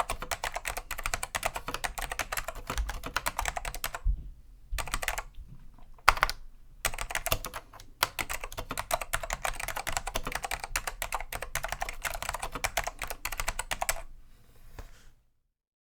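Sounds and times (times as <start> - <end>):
keyboard typing clicks: 0.0 - 4.0, 4.8 - 5.3, 6.0 - 14.0.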